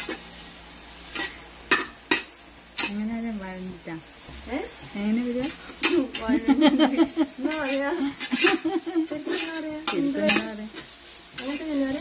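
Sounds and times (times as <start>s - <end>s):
onions sizzling in hot oil: 0.0s - 12.0s
spoon scraping metal pot: 7.5s - 8.7s.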